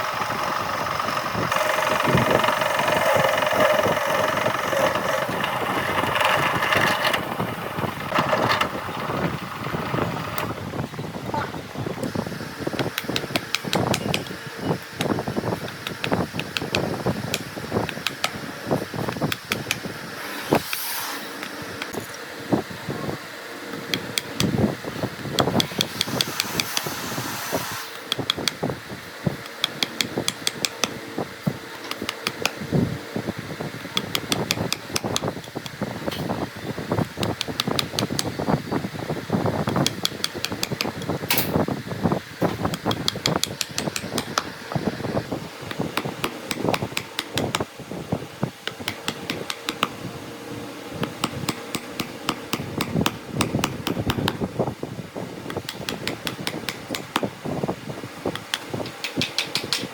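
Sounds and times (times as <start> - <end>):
steady hum: 0.0 - 58.9
hand tool tapping and knocking: 42.7 - 44.5, 55.5 - 57.3, 58.3 - 59.9.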